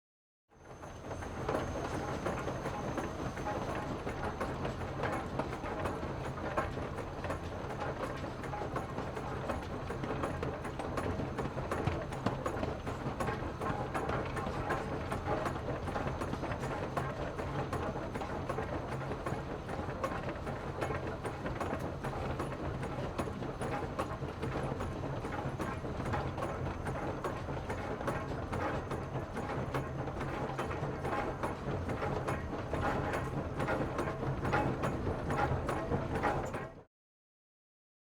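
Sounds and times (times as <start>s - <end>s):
train running: 0.6s - 6.4s, 31.0s - 36.8s.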